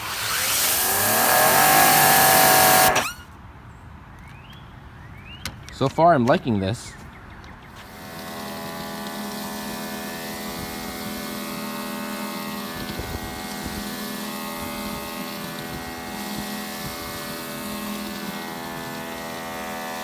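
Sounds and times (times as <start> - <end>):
pressure washer motor humming: 0.0 - 3.2, 7.8 - 20.0.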